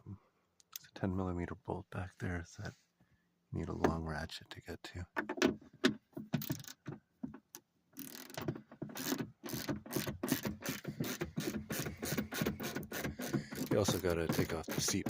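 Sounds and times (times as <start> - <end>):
ratchet wrench clicking: 8.0 - 8.4, 9.0 - 15.0.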